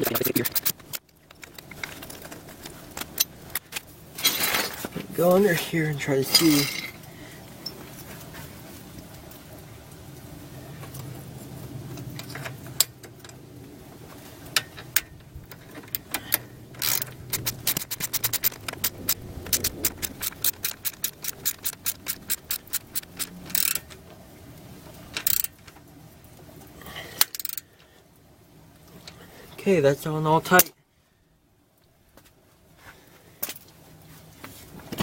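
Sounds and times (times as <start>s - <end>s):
ratchet wrench clicking: 0.0s - 1.7s, 15.9s - 23.8s, 25.2s - 25.5s, 27.2s - 27.6s
metallic clinks: 15.9s - 23.8s.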